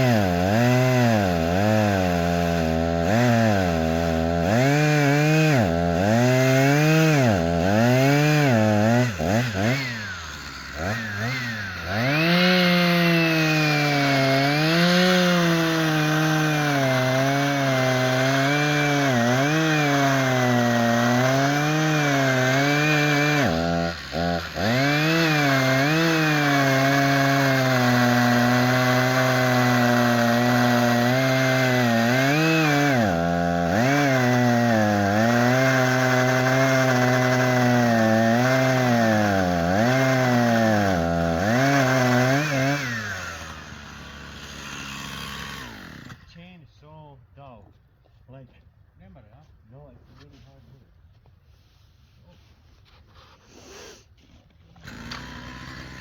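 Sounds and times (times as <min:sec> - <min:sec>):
chainsaw cutting wood: 0:00.0 - 0:46.6, 0:52.8 - 0:56.0.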